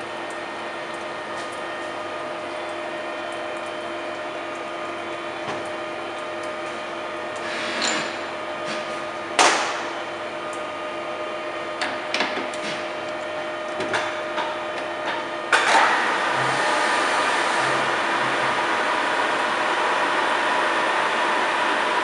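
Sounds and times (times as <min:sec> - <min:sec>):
milling machine humming: 0:00.0 - 0:22.0.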